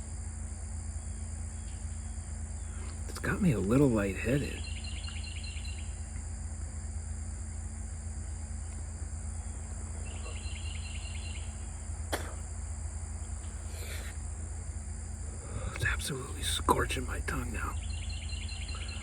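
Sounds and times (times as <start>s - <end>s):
insects: 0.0s - 19.0s
low hum: 0.0s - 19.0s
rapid chirps: 13.2s - 19.0s.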